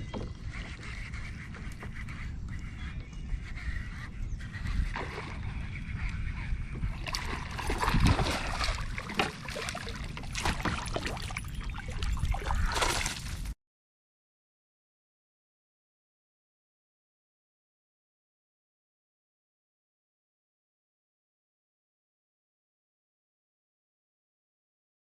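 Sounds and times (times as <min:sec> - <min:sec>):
wind buffeting microphone: 0:00.0 - 0:13.6.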